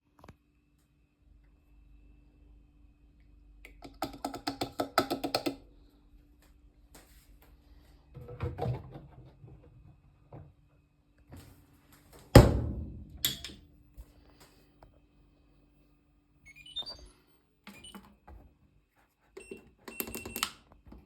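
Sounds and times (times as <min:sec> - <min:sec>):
faint electrical hum: 0:00.0 - 0:21.0
low rumbling thud: 0:12.4 - 0:13.2
control panel beeping: 0:16.5 - 0:17.1.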